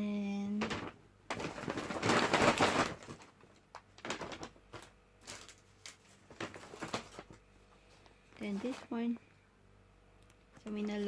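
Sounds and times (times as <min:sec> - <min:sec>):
clothing and packaging rustling: 0:00.5 - 0:09.2.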